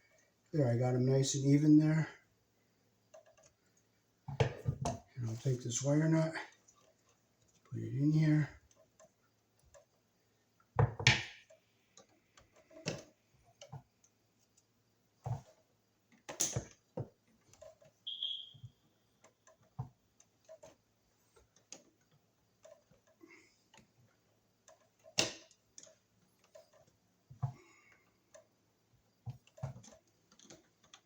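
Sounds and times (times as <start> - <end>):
short high squeak: 18.1 - 18.8.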